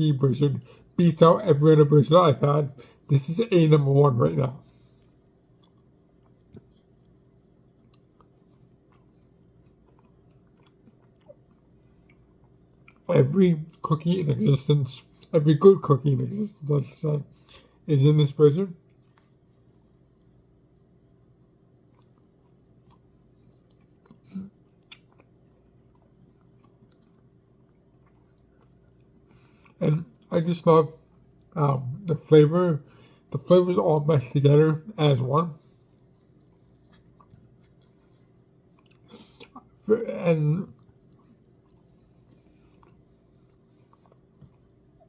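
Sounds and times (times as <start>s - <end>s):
low room hum: 0.0s - 45.0s
person chewing: 4.7s - 14.2s, 18.8s - 30.3s, 35.6s - 39.9s, 40.6s - 45.0s.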